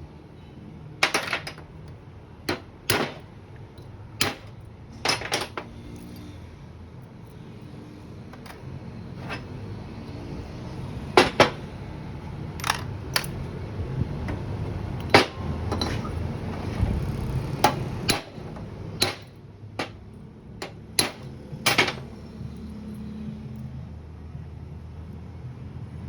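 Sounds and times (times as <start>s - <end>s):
hand tools knocking on metal: 1.0s - 3.3s, 11.0s - 11.7s, 17.5s - 22.2s.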